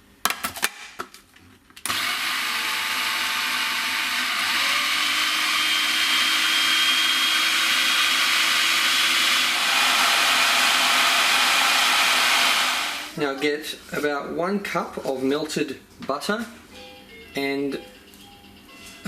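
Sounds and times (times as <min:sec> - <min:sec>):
electric kitchen mixer running: 0:01.9 - 0:13.2.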